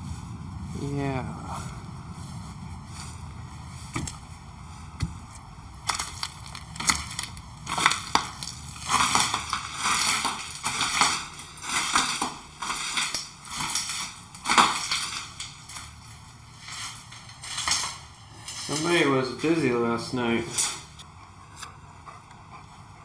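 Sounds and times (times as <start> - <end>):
crunching and crackling: 2.3 - 21.0.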